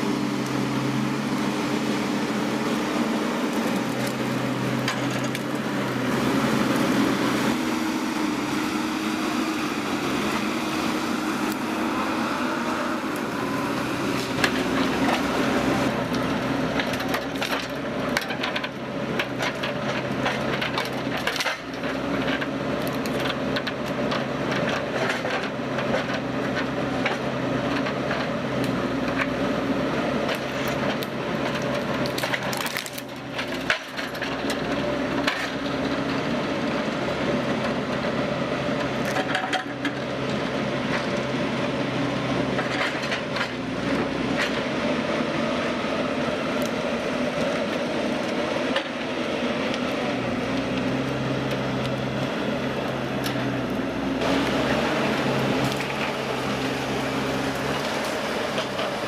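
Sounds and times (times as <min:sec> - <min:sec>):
machine humming: 0:00.0 - 0:16.8
wood cracking and splintering: 0:02.1 - 0:08.0, 0:09.1 - 0:29.4, 0:30.1 - 0:41.3, 0:42.4 - 0:44.7, 0:46.4 - 0:59.0.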